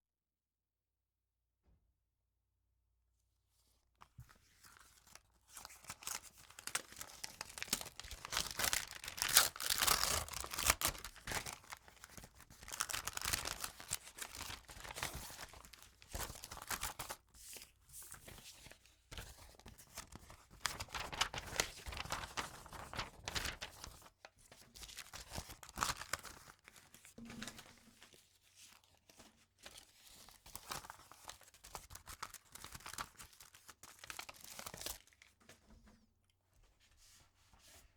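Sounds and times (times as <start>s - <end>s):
paper crinkling: 4.0s - 35.3s
paper tearing: 7.6s - 11.6s.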